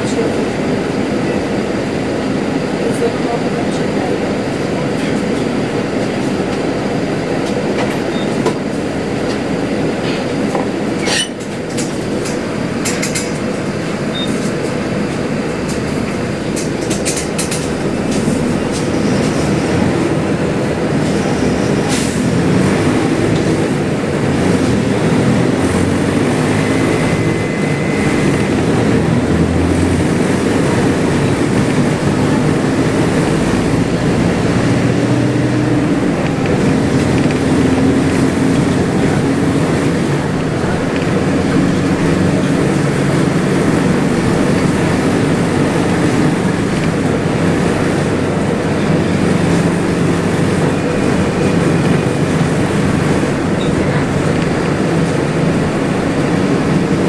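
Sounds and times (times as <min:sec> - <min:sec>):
bus diesel engine running: 0:00.0 - 0:57.0
body rattling clicks: 0:15.6 - 0:19.5.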